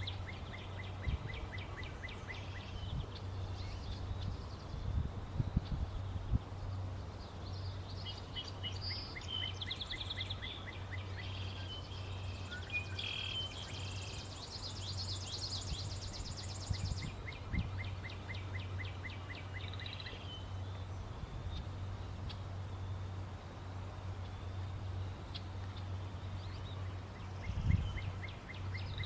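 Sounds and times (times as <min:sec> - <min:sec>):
steady low hum: 0:00.0 - 0:29.0
birds chirping and trilling: 0:06.8 - 0:23.1, 0:25.3 - 0:29.0.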